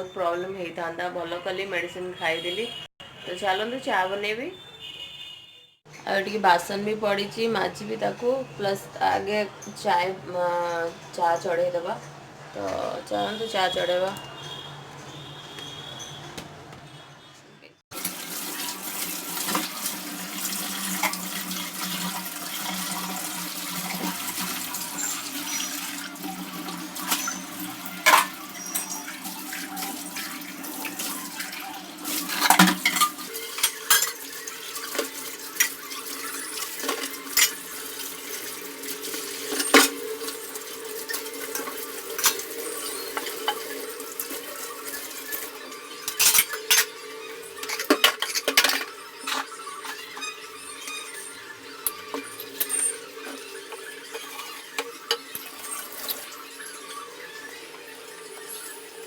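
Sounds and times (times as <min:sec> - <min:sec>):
tap water running into sink: 0:17.9 - 0:59.0
dishes clinking: 0:27.0 - 0:50.3, 0:51.8 - 0:56.3.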